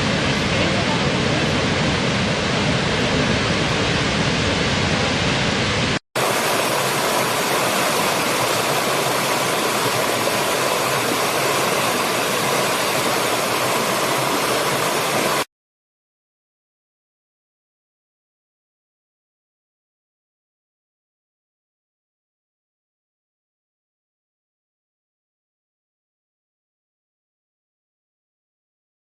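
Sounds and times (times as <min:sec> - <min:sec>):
waterfall rushing: 0:00.0 - 0:15.5.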